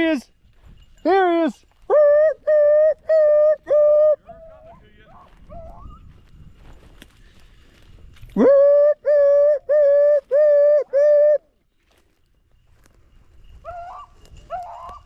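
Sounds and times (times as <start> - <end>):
beagle baying: 13.6 - 15.0.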